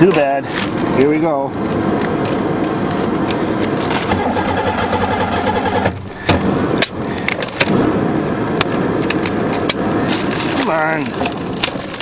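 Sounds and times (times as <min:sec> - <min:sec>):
car starter cranking: 0:04.0 - 0:06.4.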